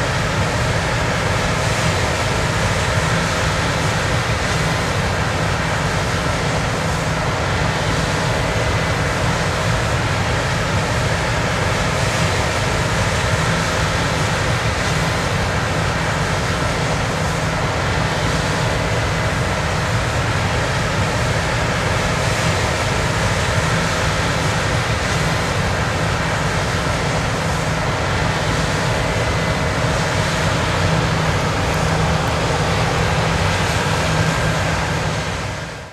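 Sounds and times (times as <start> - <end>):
combine harvester drone: 0.0 - 35.9.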